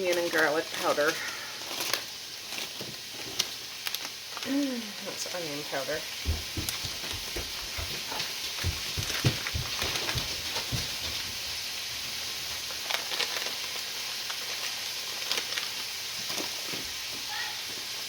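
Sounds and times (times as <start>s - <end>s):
meat sizzling in a frying pan: 0.0s - 18.0s.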